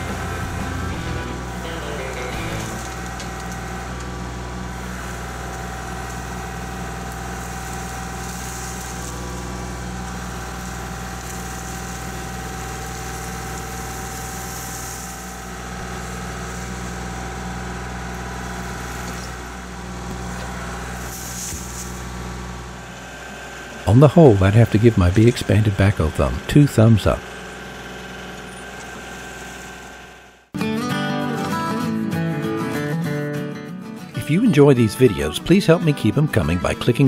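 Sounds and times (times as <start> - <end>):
tractor diesel engine running: 0.0 - 30.5.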